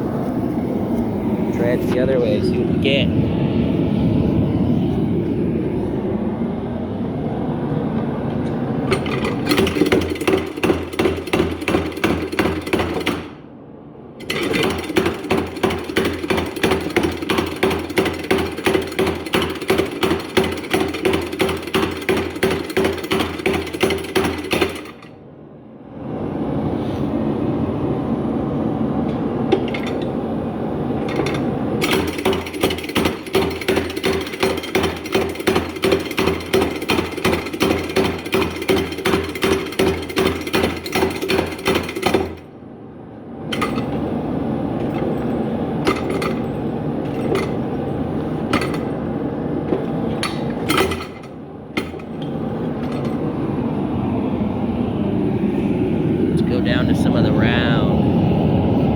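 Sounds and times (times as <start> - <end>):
hammer mechanism running: 8.8 - 13.4, 14.2 - 25.1, 29.0 - 30.3, 30.9 - 42.5, 43.5 - 53.6
power hammer striking steel: 8.9 - 13.4, 14.2 - 25.1, 31.0 - 42.4, 44.8 - 47.8, 48.4 - 49.0, 49.7 - 53.4.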